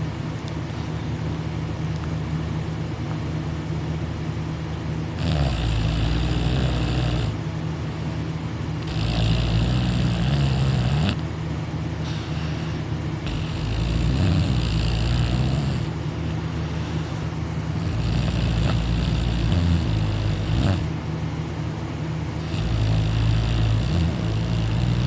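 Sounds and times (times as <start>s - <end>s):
man snoring loudly: 5.2s - 7.4s, 8.8s - 11.2s, 13.2s - 16.0s, 17.8s - 20.9s, 22.4s - 25.0s.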